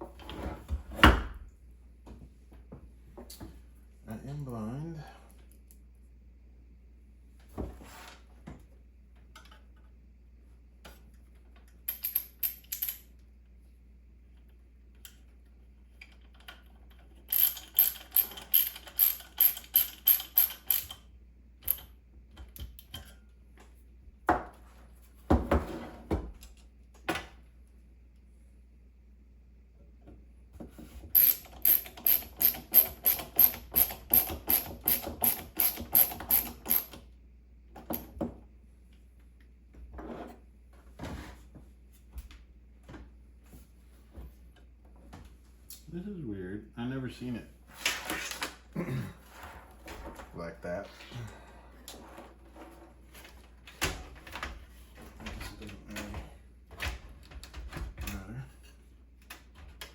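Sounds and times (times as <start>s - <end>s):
ratchet clicking: 17.3s - 21.0s, 31.2s - 36.9s.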